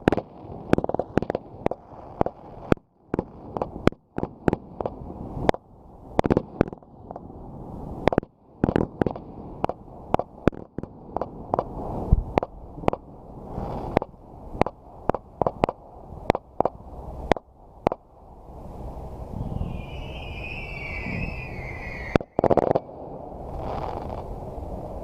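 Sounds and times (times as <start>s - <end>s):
continuous low rumble: 0.0s - 25.0s
fireworks bangs: 19.3s - 24.3s.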